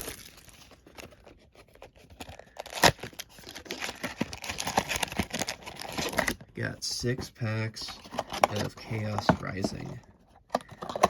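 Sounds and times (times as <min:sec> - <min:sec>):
sharp packaging crackles: 0:00.0 - 0:06.4
foil packs crinkling and rustling: 0:00.0 - 0:06.6.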